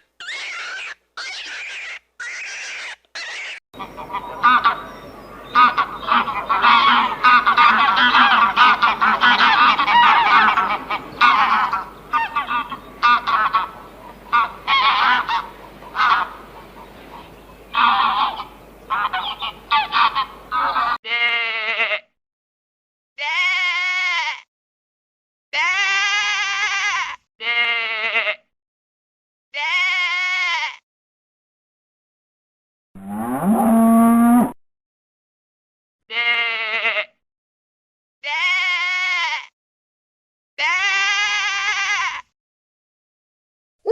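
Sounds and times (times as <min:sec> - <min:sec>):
bleats: 0:00.0 - 0:04.9, 0:05.5 - 0:16.4, 0:17.7 - 0:22.1, 0:23.2 - 0:24.4, 0:25.6 - 0:28.4, 0:29.6 - 0:30.8, 0:36.1 - 0:37.1, 0:38.2 - 0:39.5, 0:40.6 - 0:42.3
geese honking: 0:00.2 - 0:21.0.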